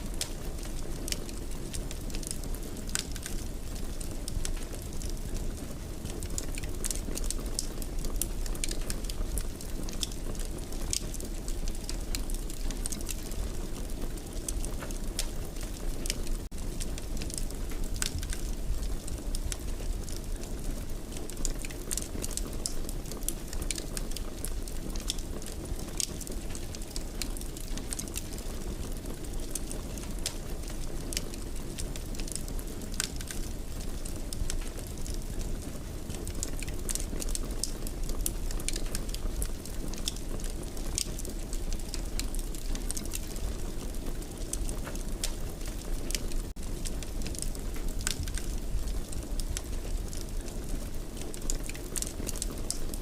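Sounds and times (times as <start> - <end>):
fire crackling in a fireplace: 0.0 - 53.0.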